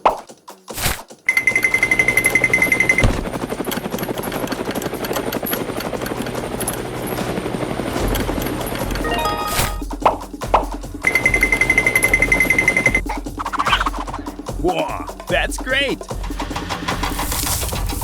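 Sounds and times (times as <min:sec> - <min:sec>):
small engine chugging: 0:01.3 - 0:09.0, 0:11.1 - 0:14.6
high-pitched tone: 0:09.0 - 0:09.9.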